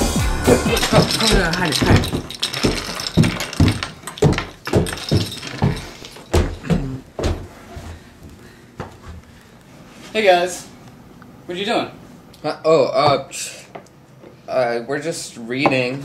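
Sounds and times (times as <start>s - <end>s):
heavy footsteps thudding: 0.0s - 8.0s.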